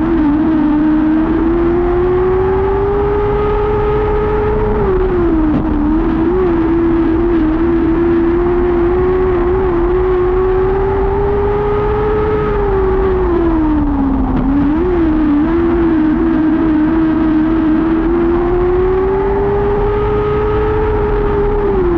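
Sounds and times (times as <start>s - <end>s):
race car engine running hard: 0.0s - 21.9s.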